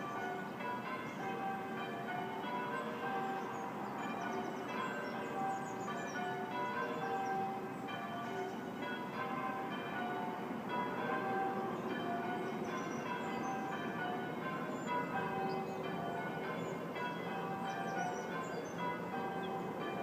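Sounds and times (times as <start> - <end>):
church bells ringing: 0.0 - 20.0.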